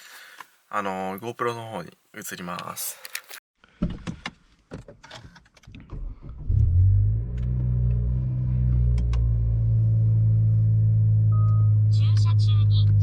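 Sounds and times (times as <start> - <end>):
car engine starting and idling: 5.9 - 13.0.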